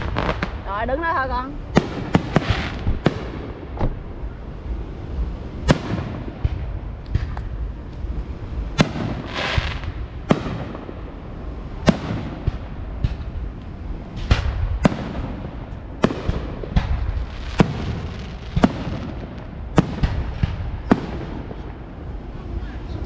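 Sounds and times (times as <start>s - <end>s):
fireworks bangs: 0.0s - 23.0s
hissing crackle: 0.0s - 23.0s
small firework pops: 5.7s - 8.2s, 11.8s - 19.2s.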